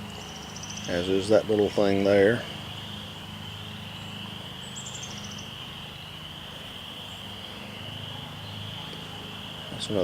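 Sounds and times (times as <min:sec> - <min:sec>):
crickets trilling: 0:00.0 - 0:10.0
low steady hum: 0:00.0 - 0:10.0.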